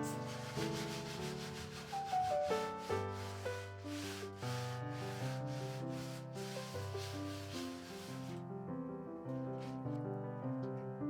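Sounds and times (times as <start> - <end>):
scrubbing rubbing noise: 0.0 - 8.4
piano-like background music: 0.0 - 11.0.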